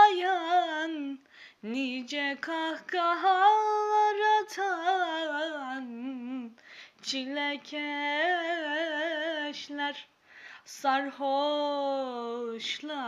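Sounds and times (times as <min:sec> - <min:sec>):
singer breathing in: 0:01.2 - 0:01.6, 0:06.6 - 0:07.0, 0:10.2 - 0:10.7.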